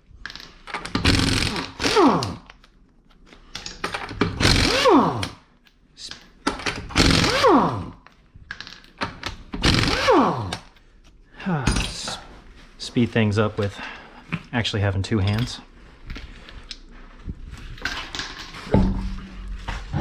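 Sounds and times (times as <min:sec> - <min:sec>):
impact wrench bursts with whine: 0:00.9 - 0:02.5, 0:04.3 - 0:05.4, 0:06.9 - 0:08.0, 0:09.6 - 0:10.7.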